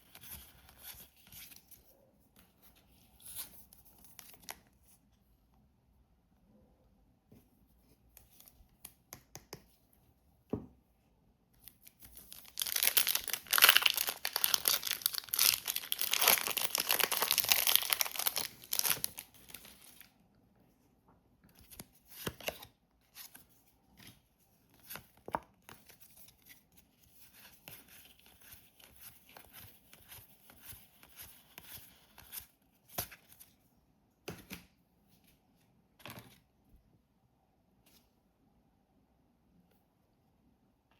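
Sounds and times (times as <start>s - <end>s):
packaging crinkling and rustling: 12.2s - 20.1s
packaging tearing: 12.4s - 19.7s.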